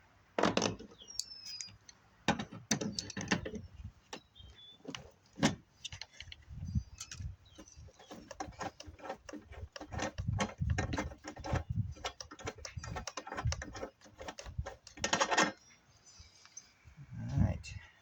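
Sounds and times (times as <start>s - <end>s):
metal parts and tools clattering: 2.3s - 3.6s, 8.1s - 15.6s.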